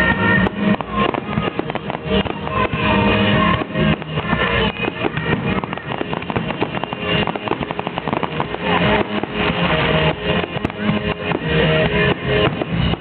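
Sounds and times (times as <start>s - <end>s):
fireworks crackling and popping: 0.0s - 13.0s
music with guitar and drums: 0.0s - 13.0s.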